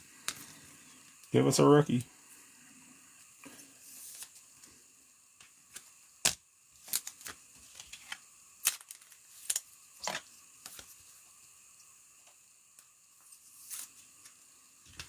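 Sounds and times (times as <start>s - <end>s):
cards flipping with clicks: 5.7s - 10.9s.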